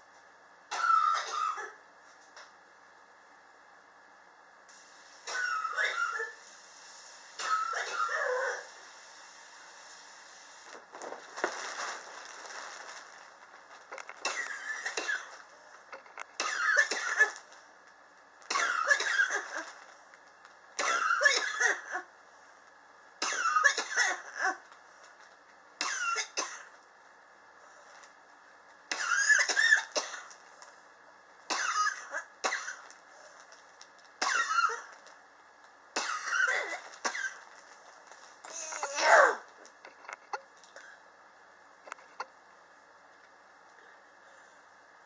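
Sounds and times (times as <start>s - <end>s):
person coughing: 0.7s - 1.8s, 5.3s - 6.4s, 7.4s - 8.7s, 16.4s - 17.4s, 38.5s - 39.4s.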